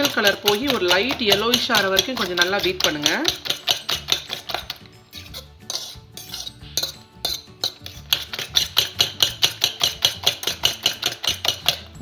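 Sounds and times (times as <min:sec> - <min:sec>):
fork clinking against bowl: 0:00.0 - 0:12.0
quiet background music: 0:00.0 - 0:12.0.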